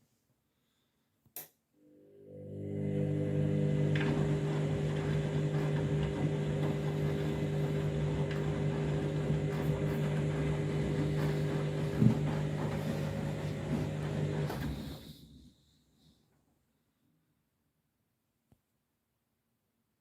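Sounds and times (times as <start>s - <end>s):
washing machine humming: 2.2s - 15.4s.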